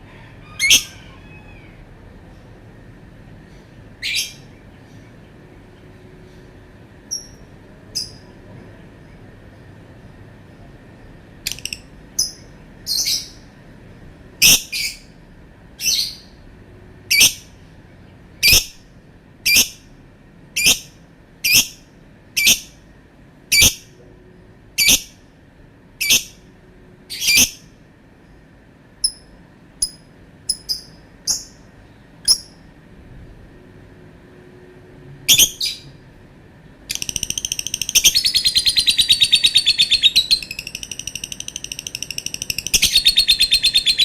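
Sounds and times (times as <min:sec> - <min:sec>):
lovebird high-pitched calls: 0:00.5 - 0:01.8, 0:04.0 - 0:04.5, 0:07.1 - 0:07.4, 0:08.0 - 0:08.3, 0:11.4 - 0:13.5, 0:14.4 - 0:15.1, 0:15.8 - 0:16.4, 0:17.1 - 0:17.5, 0:18.4 - 0:18.8, 0:19.4 - 0:19.9, 0:20.6 - 0:21.8, 0:22.4 - 0:22.8, 0:23.5 - 0:23.9, 0:24.8 - 0:25.2, 0:26.0 - 0:26.4, 0:27.1 - 0:27.7, 0:29.0 - 0:32.6, 0:35.3 - 0:36.0, 0:36.9 - 0:44.0
soft bird chirps: 0:36.9 - 0:44.0.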